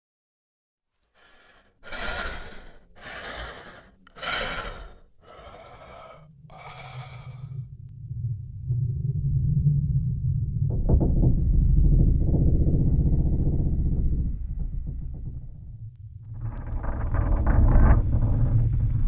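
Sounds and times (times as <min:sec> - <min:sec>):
creature hissing exhales: 0:01.2 - 0:07.6
low rumble: 0:04.4 - 0:17.5.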